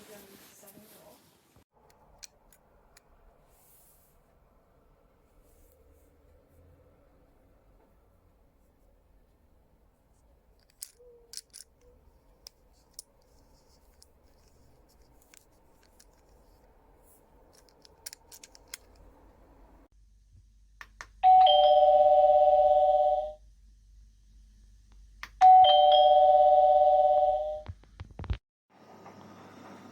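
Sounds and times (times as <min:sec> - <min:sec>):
doorbell ringing ding-dong: 0:21.2 - 0:23.4, 0:25.4 - 0:27.6.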